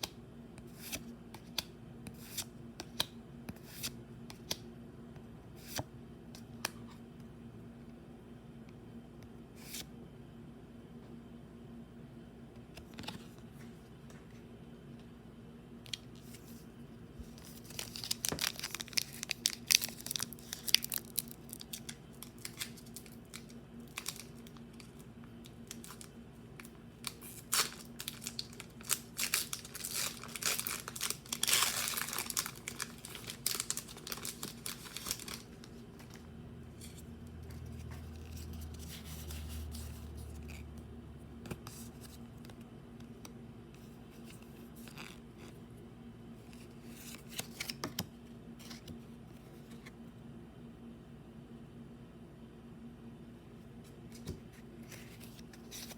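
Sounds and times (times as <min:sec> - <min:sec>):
crinkly packaging being torn open: 0:17.4 - 0:36.2.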